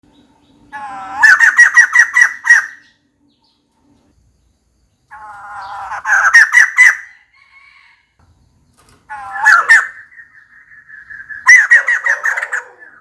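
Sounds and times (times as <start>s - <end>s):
bird cackling call: 0.7s - 2.8s, 5.1s - 8.0s, 9.1s - 13.0s.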